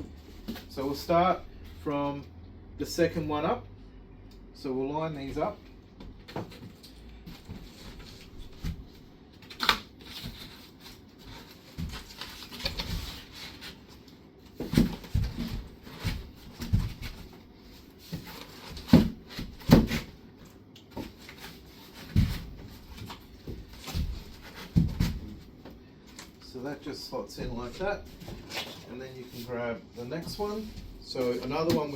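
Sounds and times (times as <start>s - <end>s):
cardboard knocks and scrapes: 14.5s - 20.2s, 20.9s - 25.7s, 30.1s - 31.9s.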